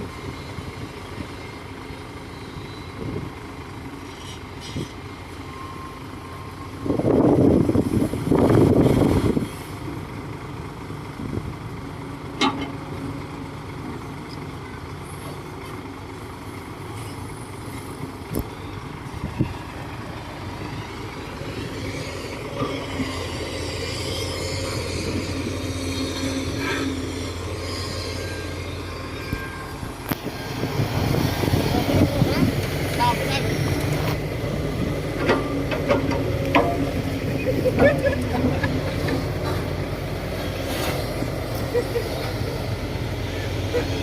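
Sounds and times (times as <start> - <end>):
bulldozer diesel engine running: 0.0 - 44.0
sharp metallic clanks: 35.2 - 37.1.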